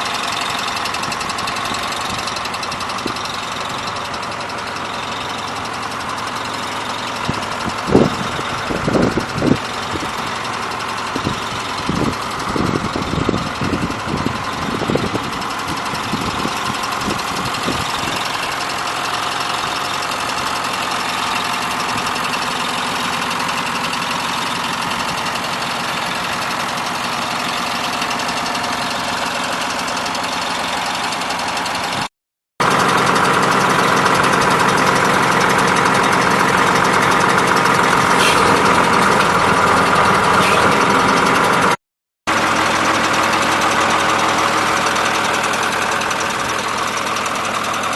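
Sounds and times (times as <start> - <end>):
diesel engine running: 0.0 - 47.9
sharp knocks and clunks: 38.0 - 41.7.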